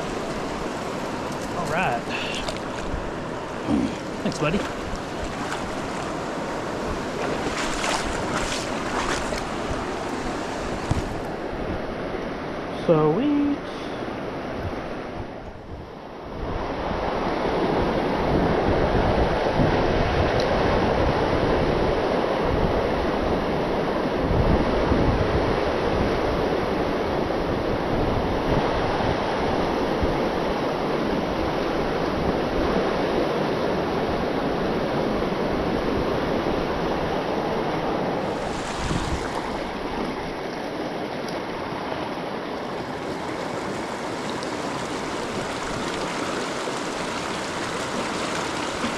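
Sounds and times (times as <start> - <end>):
wind buffeting microphone: 0.0 - 12.3, 14.5 - 40.5, 41.5 - 48.9
river water rushing: 0.0 - 15.1, 30.4 - 48.9.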